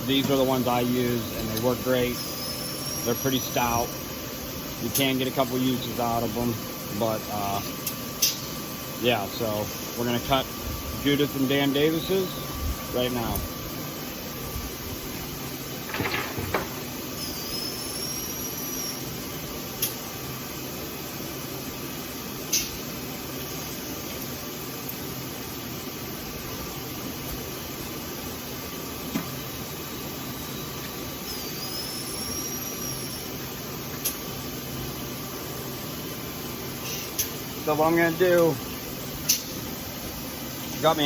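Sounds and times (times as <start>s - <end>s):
milling machine humming: 0.0s - 41.0s
short high squeal: 17.2s - 19.0s, 31.3s - 33.2s.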